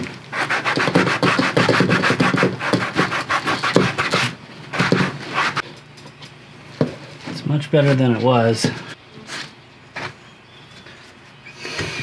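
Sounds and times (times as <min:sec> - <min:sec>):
sandpaper rubbing leather: 0:00.3 - 0:05.6.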